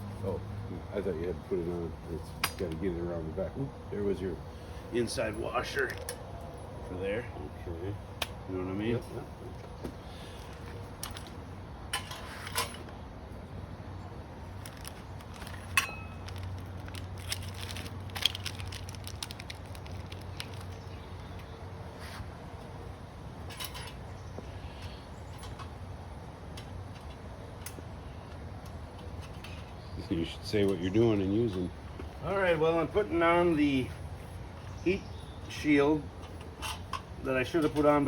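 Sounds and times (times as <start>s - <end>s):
metal parts and tools clinking: 10.4s - 12.9s, 14.6s - 20.8s, 23.5s - 24.0s.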